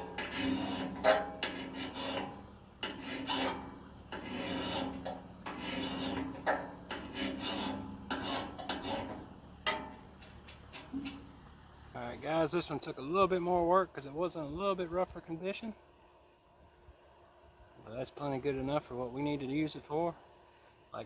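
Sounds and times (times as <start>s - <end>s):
metal file rasping on steel blade: 0.0s - 9.8s.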